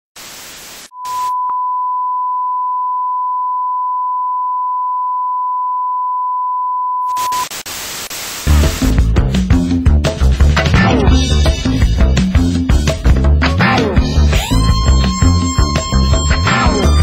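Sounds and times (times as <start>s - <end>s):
crackly hiss: 0.2s - 0.9s, 7.2s - 9.0s
steady electronic test tone: 0.9s - 8.0s.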